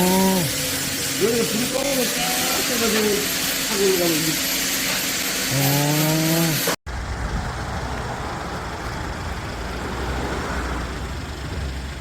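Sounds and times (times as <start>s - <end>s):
engine idling: 6.9s - 12.0s.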